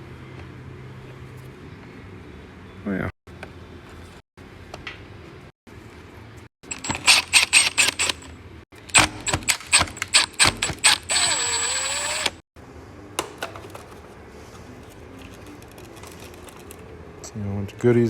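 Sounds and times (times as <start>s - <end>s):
vacuum motor whir: 6.7s - 8.3s, 8.9s - 12.4s
plastic housing clicking and rattling: 15.2s - 16.8s.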